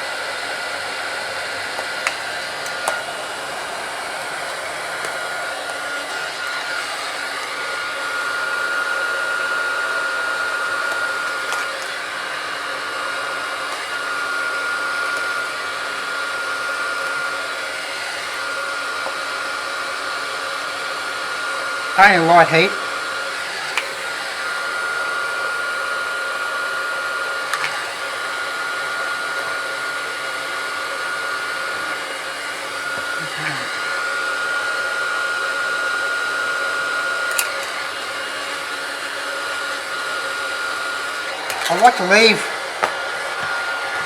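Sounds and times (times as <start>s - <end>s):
heat gun blowing air: 0.0s - 44.0s.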